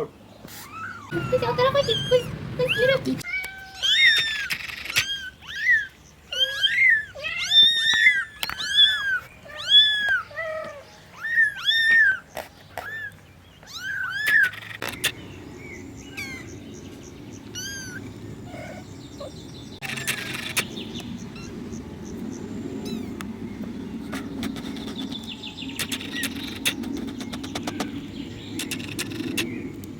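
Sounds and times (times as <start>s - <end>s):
cats meowing: 0.5s - 15.2s, 16.1s - 16.5s, 17.5s - 20.7s.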